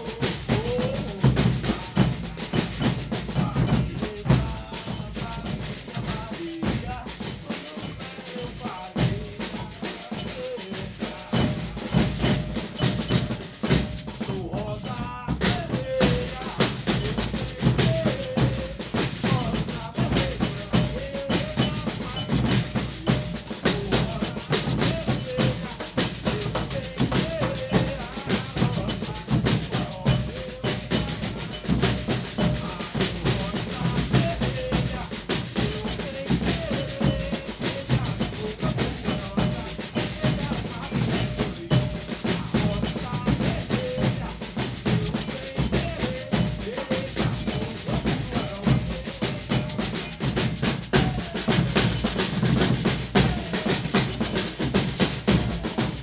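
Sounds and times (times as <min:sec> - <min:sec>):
percussion ensemble drumming: 0:00.0 - 0:56.0.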